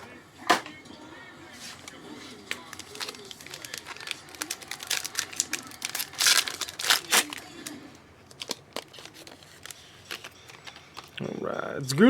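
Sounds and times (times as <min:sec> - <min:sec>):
cards being handled: 0:01.5 - 0:11.2
wrapper crinkling and tearing: 0:01.7 - 0:11.2.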